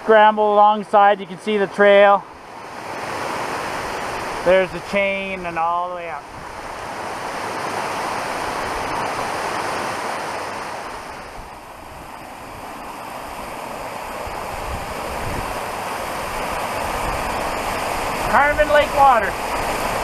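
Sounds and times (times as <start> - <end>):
falling water rushing: 0.0 - 20.0
wind buffeting microphone: 6.2 - 20.0.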